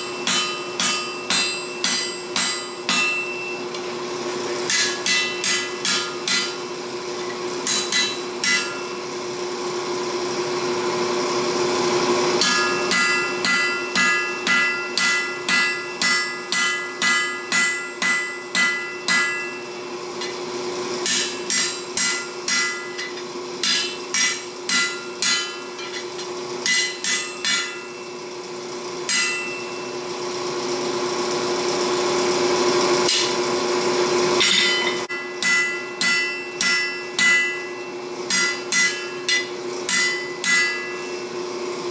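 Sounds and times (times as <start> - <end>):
hammer ringing on anvil: 0.0 - 3.7, 4.6 - 9.1, 12.4 - 28.3, 29.1 - 30.0, 33.1 - 33.4, 34.4 - 41.4
steady hum: 11.6 - 30.7.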